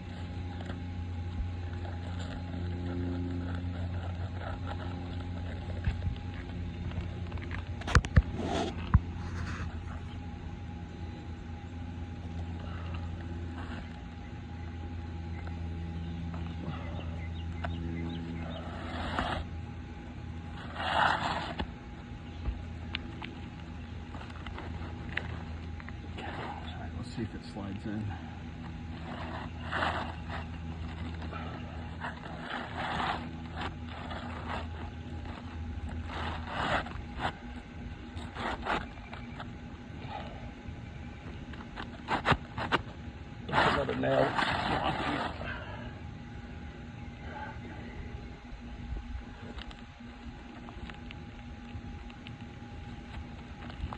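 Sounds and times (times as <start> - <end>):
motor humming: 0.0 - 53.9
short scraping noises: 7.8 - 10.0, 20.5 - 21.8.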